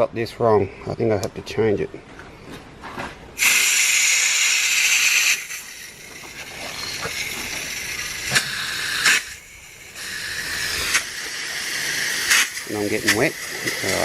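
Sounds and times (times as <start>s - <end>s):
water spraying from pipe fitting: 3.4s - 14.0s.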